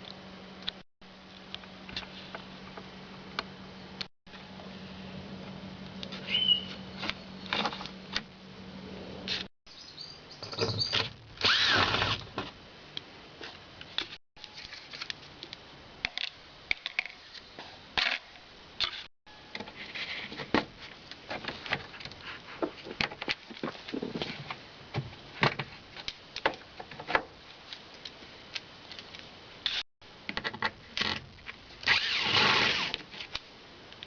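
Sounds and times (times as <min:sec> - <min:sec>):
short squeak: 0:10.4 - 0:11.1.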